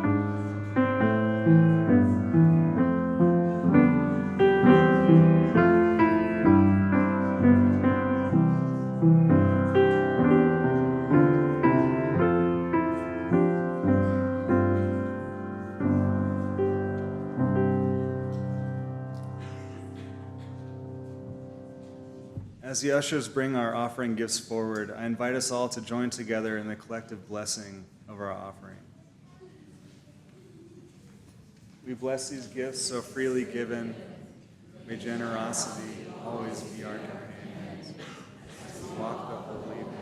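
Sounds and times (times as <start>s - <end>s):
slow piano piece: 0.0s - 24.5s, 34.9s - 40.0s.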